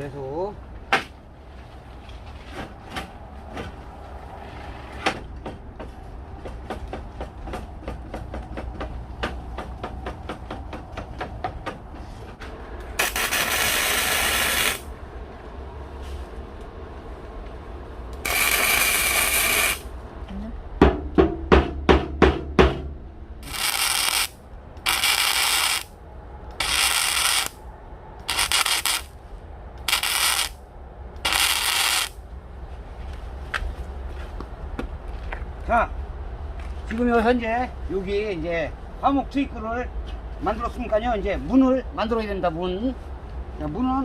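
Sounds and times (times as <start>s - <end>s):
electric welding: 13.0s - 14.9s, 18.2s - 19.9s, 23.4s - 27.6s, 28.2s - 29.2s, 29.8s - 30.6s, 31.2s - 32.2s.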